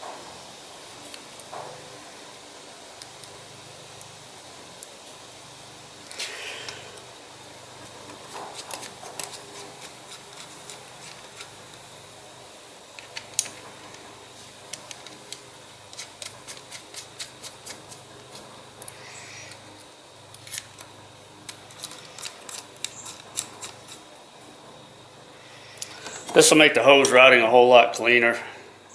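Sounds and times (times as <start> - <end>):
clicks of parts and tools handled: 12.9 - 14.0, 14.7 - 20.9, 21.5 - 24.0.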